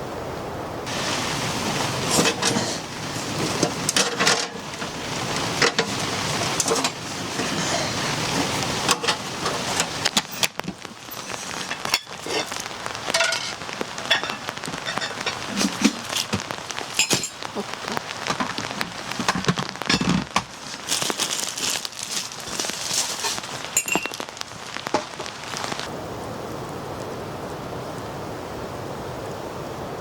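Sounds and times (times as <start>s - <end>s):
rain pattering: 0.0s - 30.0s.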